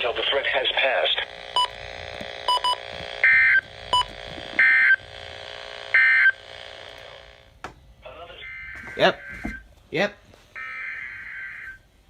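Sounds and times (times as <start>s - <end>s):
radio background noise: 0.0s - 5.0s, 8.0s - 9.6s.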